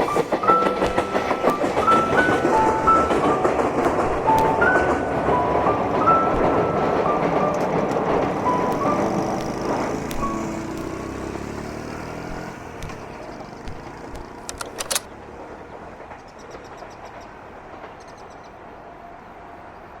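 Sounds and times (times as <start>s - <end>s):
sharp clicks: 0.4s - 11.3s, 12.1s - 15.1s
vehicle rumble: 6.3s - 16.0s.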